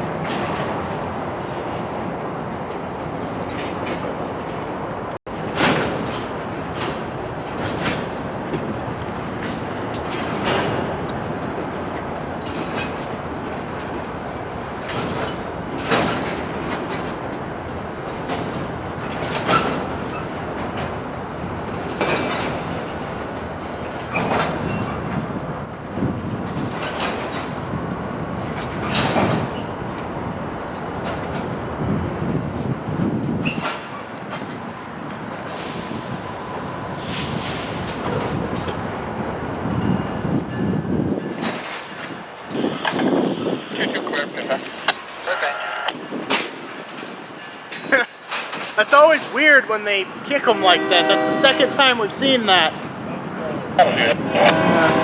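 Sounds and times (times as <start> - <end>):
freight cars rumbling: 0.0 - 55.0
wheel clacks over rail joints: 22.0 - 23.3.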